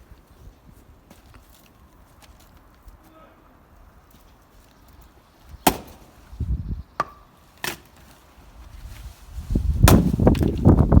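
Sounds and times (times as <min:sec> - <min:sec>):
axe splitting firewood: 0:05.6 - 0:06.1, 0:09.8 - 0:10.8.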